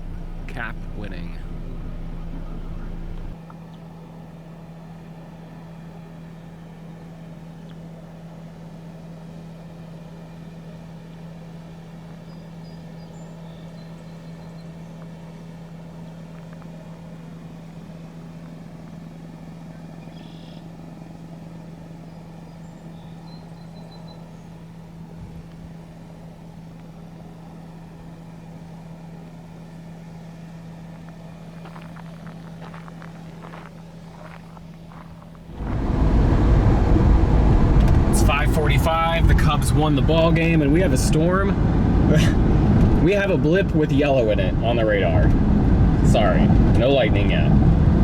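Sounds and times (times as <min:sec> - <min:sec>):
vehicle idling inside cabin: 0:00.0 - 0:48.0
loud rushing noise: 0:35.5 - 0:43.4.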